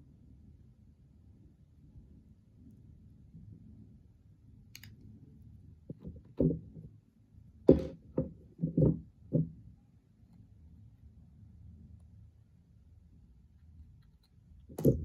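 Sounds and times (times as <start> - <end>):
plastic parts knocking and clicking: 5.9 - 6.8, 7.7 - 9.6, 14.7 - 15.0.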